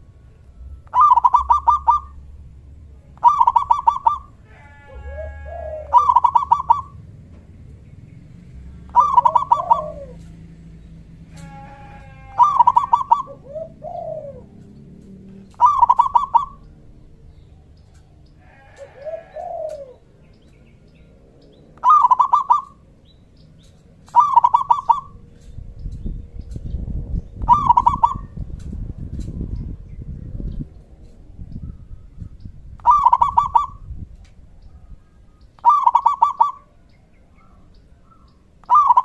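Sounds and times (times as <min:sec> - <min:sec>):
low rumble: 0:00.0 - 0:17.9, 0:25.0 - 0:35.6
soft low arching bird calls: 0:00.0 - 0:39.0
dove cooing in staccato phrases: 0:00.8 - 0:02.5, 0:03.2 - 0:07.2, 0:08.8 - 0:20.6, 0:21.8 - 0:22.9, 0:23.7 - 0:25.6, 0:27.4 - 0:28.4, 0:32.8 - 0:33.9, 0:35.6 - 0:36.8, 0:37.4 - 0:39.0.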